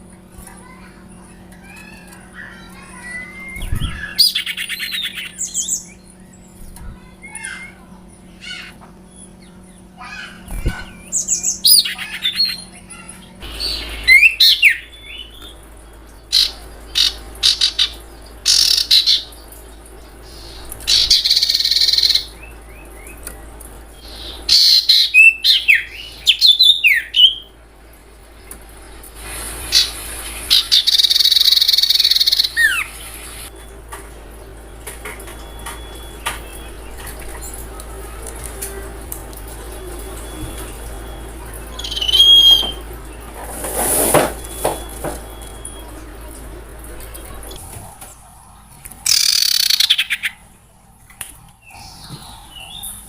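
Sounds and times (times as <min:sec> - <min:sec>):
owl screeching and chirping: 0:41.8 - 0:42.8.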